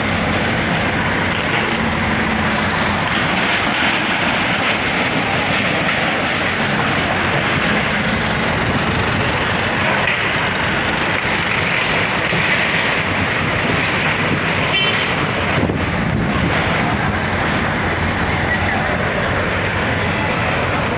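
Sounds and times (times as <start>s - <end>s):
traffic and engines: 0.0s - 20.9s
car horn toot: 14.7s - 15.1s.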